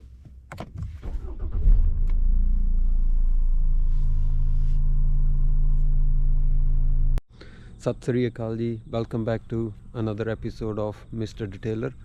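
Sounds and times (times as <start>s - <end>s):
car engine rumbling inside cabin: 0.0s - 7.2s.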